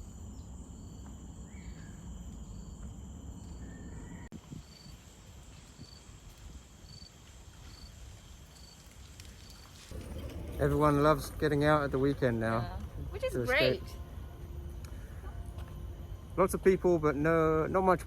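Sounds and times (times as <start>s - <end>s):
insect chorus: 0.0s - 18.0s
bird calls: 1.4s - 2.1s
low rumble: 9.9s - 17.2s.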